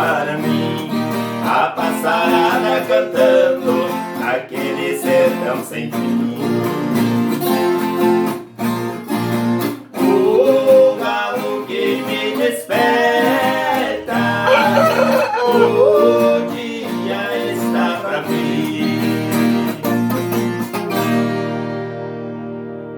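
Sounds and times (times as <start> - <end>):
plucked viola strings: 14.5 - 16.0.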